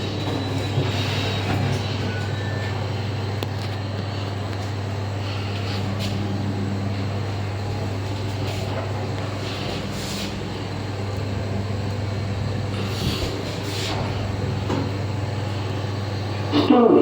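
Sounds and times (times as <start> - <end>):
lift low hum: 0.0 - 16.7
lift rushing noise: 5.2 - 16.5.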